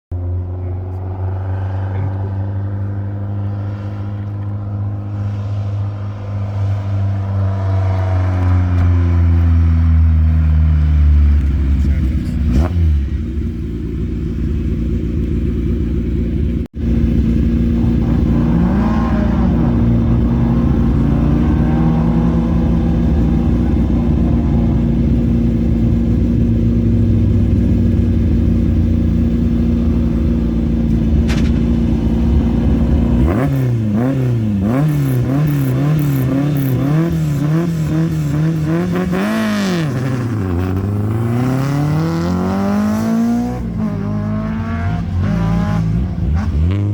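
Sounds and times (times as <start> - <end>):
engine revving: 0.1 - 46.9
rally car engine idling: 8.3 - 38.7.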